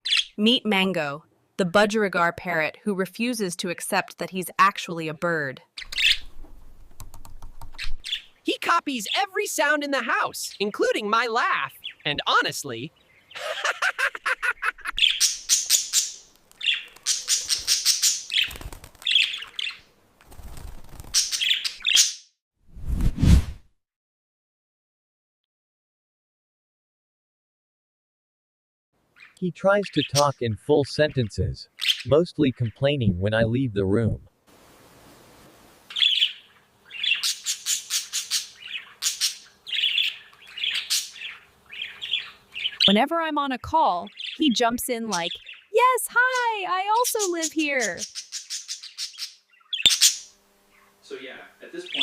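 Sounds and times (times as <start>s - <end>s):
budgerigar chattering: 5.8s - 6.3s, 14.6s - 18.5s, 29.2s - 30.4s, 35.9s - 43.1s, 47.0s - 50.3s.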